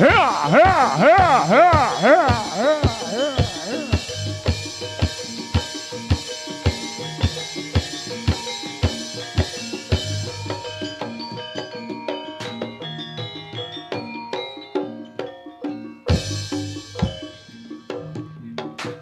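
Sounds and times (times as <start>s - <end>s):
swooping tone: 0.0s - 4.5s
drum strokes: 0.0s - 10.8s
ringing pitched notes: 0.0s - 13.5s.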